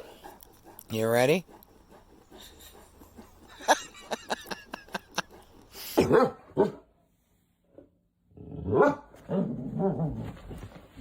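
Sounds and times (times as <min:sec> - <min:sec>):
dog barking: 0:06.0 - 0:06.8, 0:08.7 - 0:09.5.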